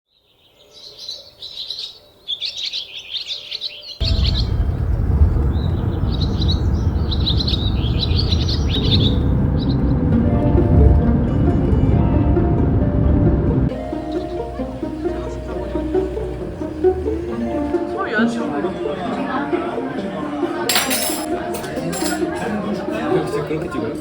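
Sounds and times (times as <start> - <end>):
birds chirping: 0.2 - 21.4
loud low rushing noise: 4.0 - 18.0.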